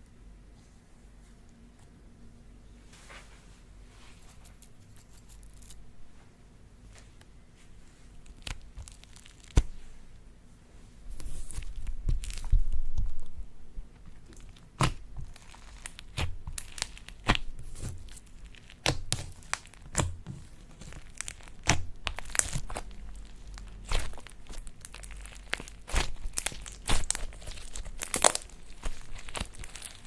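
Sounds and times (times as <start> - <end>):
slime squeezed by hand crackling: 20.8 - 30.0.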